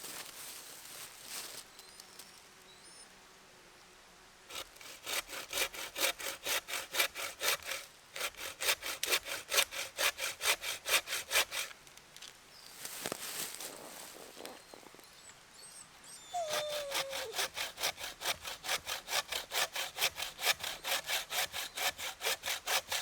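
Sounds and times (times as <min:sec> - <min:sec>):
hand saw cutting wood: 0:04.5 - 0:11.8, 0:16.3 - 0:23.0.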